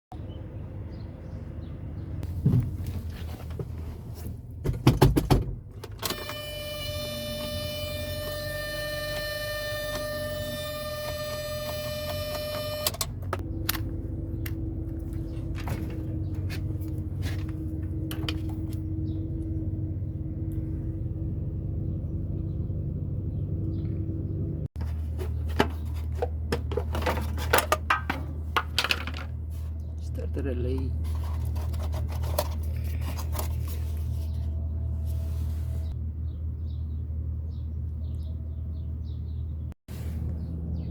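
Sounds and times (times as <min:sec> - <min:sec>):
electronic warning buzz: 0:06.0 - 0:13.1.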